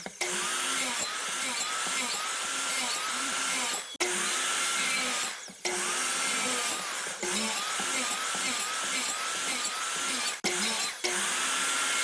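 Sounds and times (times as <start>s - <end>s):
power drill whining: 0.2s - 12.0s.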